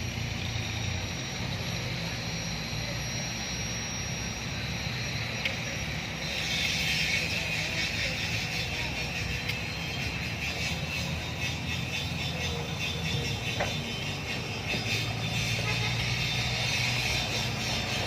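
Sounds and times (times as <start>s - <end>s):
heavy diesel machinery rumbling: 0.0s - 18.0s
high machine whine: 0.0s - 18.0s
loud hissing noise: 0.0s - 18.0s.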